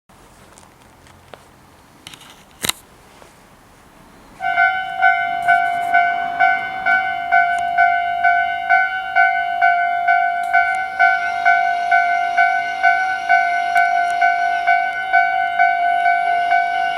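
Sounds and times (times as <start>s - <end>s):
level crossing warning bell: 2.9s - 16.9s
higher ringing tone: 4.4s - 16.9s.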